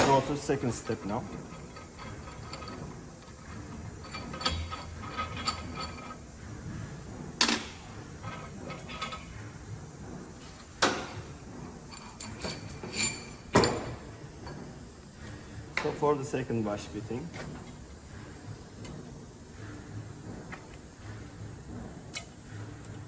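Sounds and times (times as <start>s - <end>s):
metal tools clinking: 0.0s - 6.2s, 11.9s - 14.6s.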